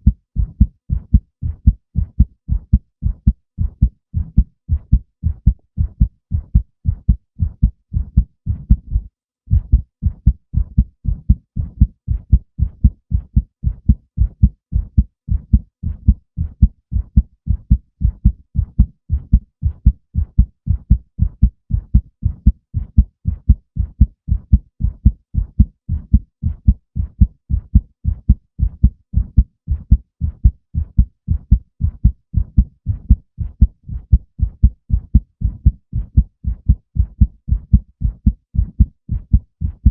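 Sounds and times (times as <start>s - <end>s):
heartbeat thumps: 0.0s - 39.9s.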